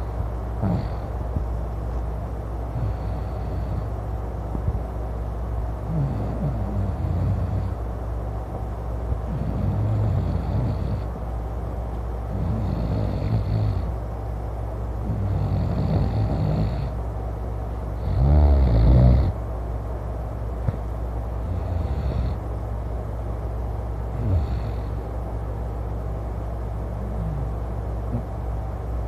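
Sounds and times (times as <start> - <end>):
man snoring loudly: 0.6 - 1.0, 5.9 - 7.8, 9.3 - 11.1, 12.3 - 13.9, 15.0 - 17.0, 18.0 - 19.4, 21.4 - 22.4, 24.1 - 25.0, 27.0 - 28.2.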